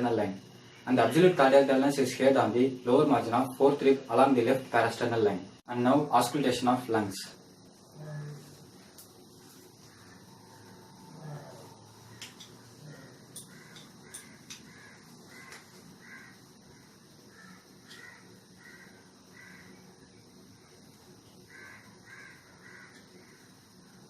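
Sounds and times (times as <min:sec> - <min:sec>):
crows cawing faintly: 0:09.5 - 0:19.9, 0:21.4 - 0:24.0.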